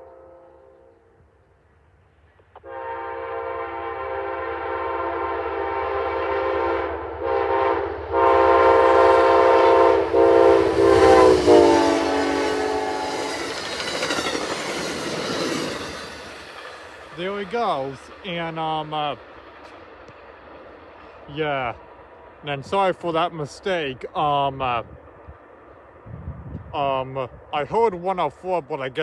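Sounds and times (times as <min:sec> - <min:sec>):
train air horn blast: 0:00.0 - 0:01.2, 0:02.6 - 0:13.6
passing train rush and wheel clatter: 0:00.0 - 0:29.0.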